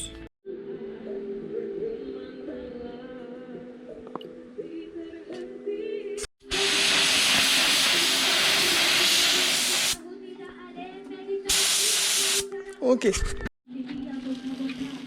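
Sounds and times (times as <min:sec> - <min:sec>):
paint spray gun hissing: 0:06.5 - 0:10.0, 0:11.5 - 0:12.4.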